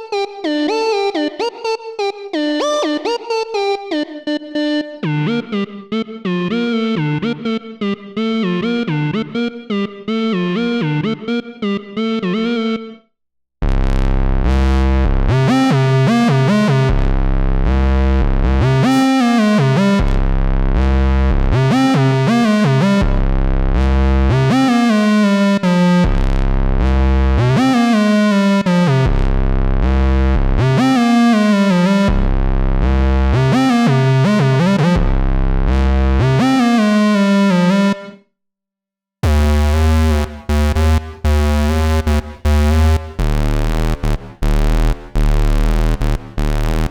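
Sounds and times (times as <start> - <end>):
low synthesizer notes with slides: 39.2 - 46.9
staccato synthesizer notes: 39.2 - 46.9.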